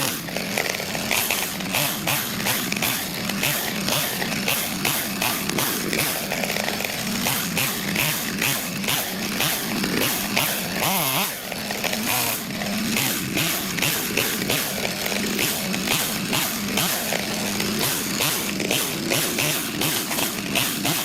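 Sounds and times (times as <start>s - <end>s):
chainsaw cutting wood: 0.0s - 21.0s.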